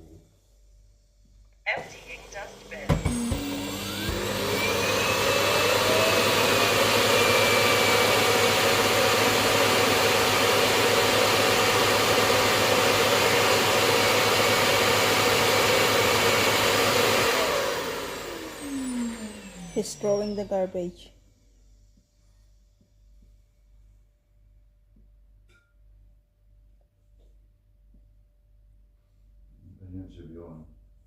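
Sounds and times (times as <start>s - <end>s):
suction motor whirring: 2.6s - 20.8s.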